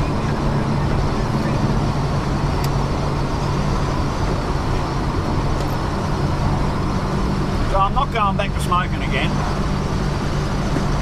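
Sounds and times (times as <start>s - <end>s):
car engine drone: 0.0s - 11.0s
tyre and road noise: 0.0s - 11.0s.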